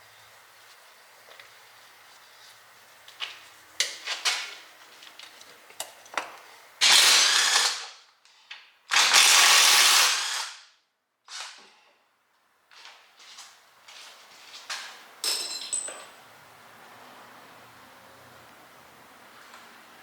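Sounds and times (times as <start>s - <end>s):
power tool running on bolts: 6.8s - 7.9s, 8.9s - 10.6s.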